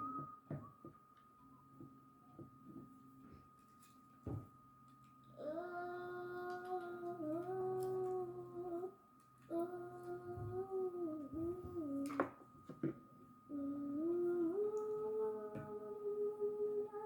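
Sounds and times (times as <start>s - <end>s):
person humming: 5.4s - 12.2s, 13.5s - 17.0s.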